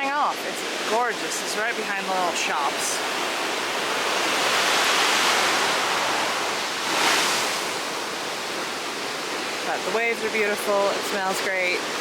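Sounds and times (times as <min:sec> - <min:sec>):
ocean surf breaking: 0:00.4 - 0:10.7
wave crashing: 0:03.8 - 0:09.6.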